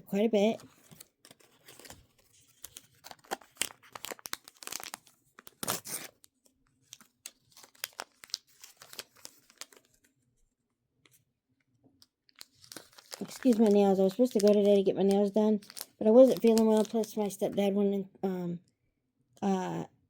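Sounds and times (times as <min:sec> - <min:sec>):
plastic packaging crinkling: 0:00.8 - 0:10.1, 0:12.4 - 0:17.5.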